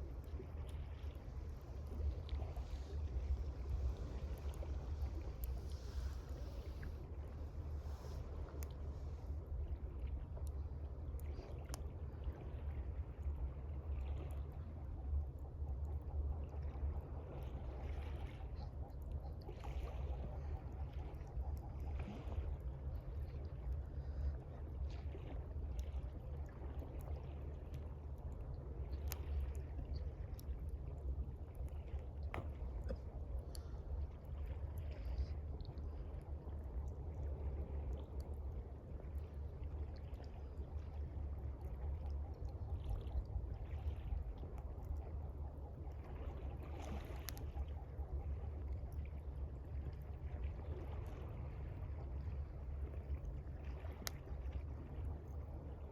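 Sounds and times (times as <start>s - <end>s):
steady low rumble: 0.0s - 55.9s
water lapping: 0.0s - 55.9s.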